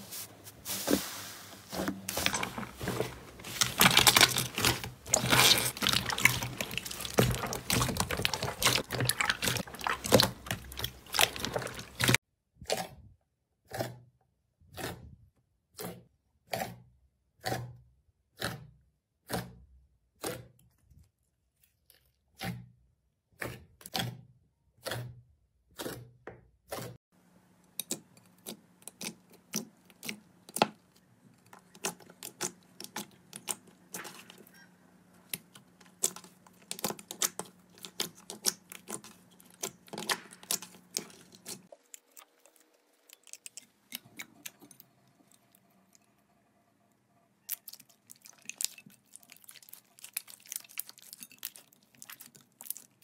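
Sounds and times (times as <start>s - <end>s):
slime squelching: 0.0s - 12.9s, 27.8s - 46.2s, 47.4s - 53.0s
slime crackling and popping: 3.5s - 12.2s, 47.5s - 53.0s.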